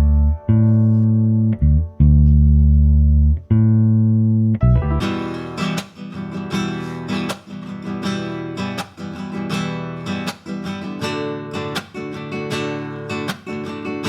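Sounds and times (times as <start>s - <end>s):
acoustic guitar strumming chords: 4.7s - 14.0s.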